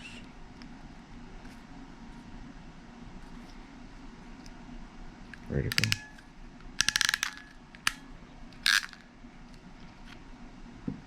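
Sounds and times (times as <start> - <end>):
crimp tool ratchet clicking: 5.7 - 6.0, 6.8 - 7.4, 8.7 - 9.0
connector snapping: 5.7 - 6.1.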